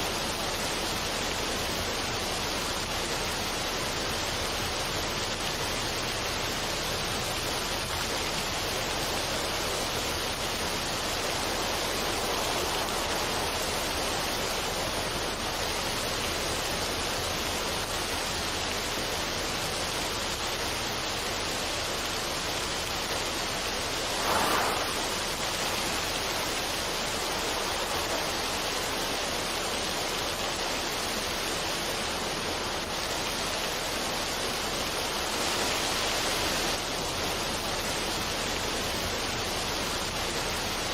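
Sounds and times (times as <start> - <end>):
stream pouring over rocks: 0.0 - 40.9
water splash: 23.8 - 29.9.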